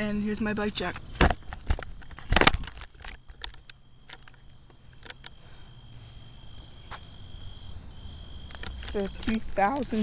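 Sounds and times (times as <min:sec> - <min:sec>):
crickets chirring: 0:00.0 - 0:10.0
light scattered ticks: 0:00.0 - 0:10.0
sharp clicks and knocks: 0:00.9 - 0:05.4.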